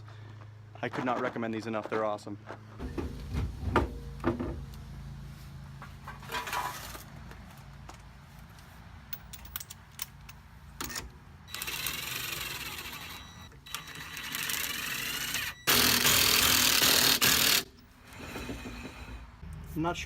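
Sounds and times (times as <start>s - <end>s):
power tool running lug nuts: 11.5s - 19.4s.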